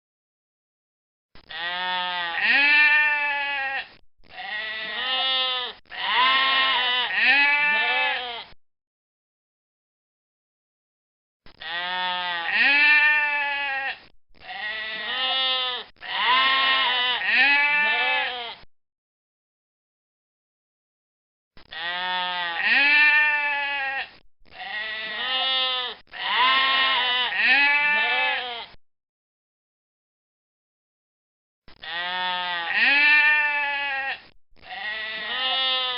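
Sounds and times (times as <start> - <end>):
goat bleating: 1.5 - 8.6, 11.6 - 18.7, 21.6 - 28.8, 31.8 - 35.9.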